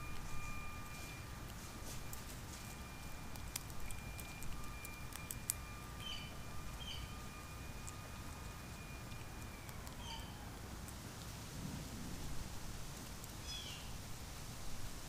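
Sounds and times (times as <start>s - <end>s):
sharp clicks and crackles: 0.8s - 6.0s.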